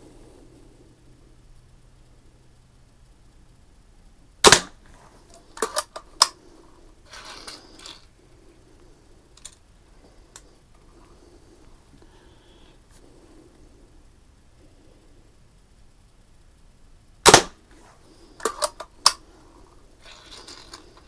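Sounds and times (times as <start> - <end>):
sharp clicks and rattles: 4.4 - 12.1, 17.2 - 21.0
bb gun firing pop: 4.5 - 4.8, 17.3 - 17.6.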